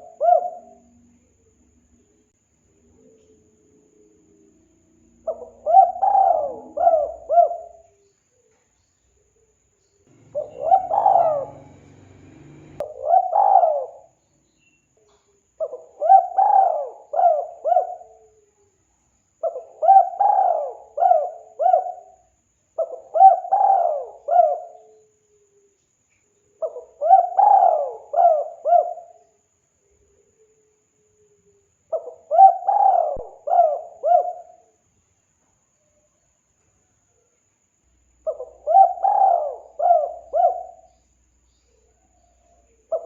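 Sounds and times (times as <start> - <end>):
dove cooing: 0.0 - 1.2, 5.2 - 8.0, 10.1 - 14.2, 15.6 - 18.4, 19.4 - 22.2, 22.8 - 25.1, 26.6 - 29.2, 31.9 - 34.6, 38.2 - 40.9.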